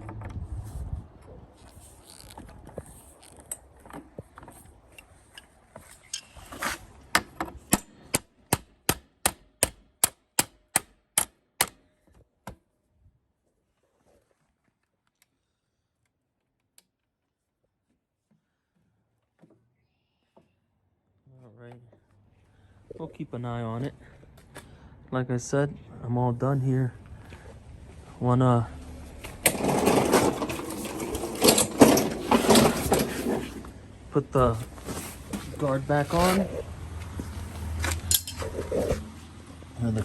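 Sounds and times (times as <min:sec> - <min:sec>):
sharp clicks of hand tool: 0:07.2 - 0:11.8
faint handling noise: 0:34.4 - 0:39.7.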